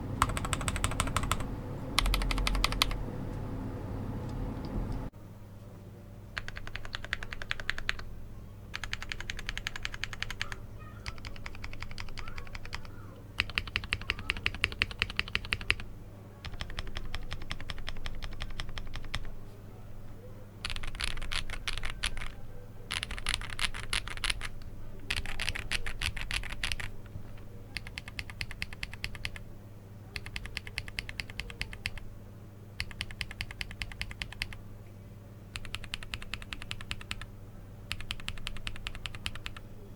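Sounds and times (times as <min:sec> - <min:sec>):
mechanical keyboard typing: 0:00.2 - 0:03.0, 0:06.4 - 0:08.1, 0:08.7 - 0:15.8, 0:16.4 - 0:19.4, 0:20.6 - 0:29.4, 0:30.2 - 0:32.1, 0:32.8 - 0:34.6, 0:35.5 - 0:37.3, 0:37.9 - 0:39.6.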